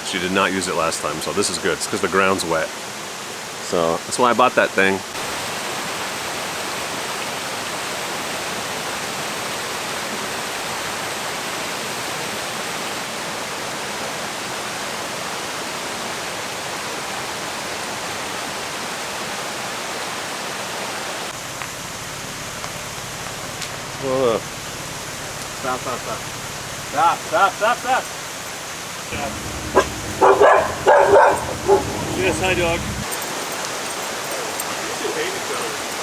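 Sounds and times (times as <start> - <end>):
waterfall rushing: 21.4 - 36.0.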